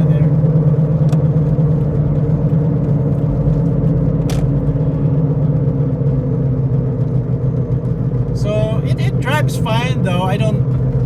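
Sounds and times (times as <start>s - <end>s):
road noise: 0.0s - 11.0s.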